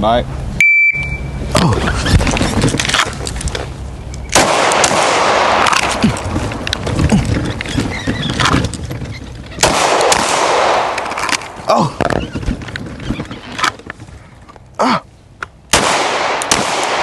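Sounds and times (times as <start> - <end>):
gunshots: 4.3 - 6.4, 9.6 - 11.3, 15.7 - 17.0.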